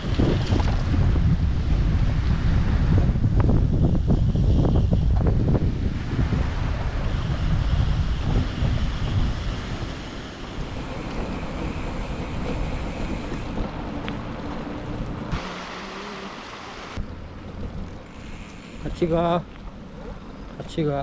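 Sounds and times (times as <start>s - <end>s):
wind buffeting microphone: 0.0s - 15.4s.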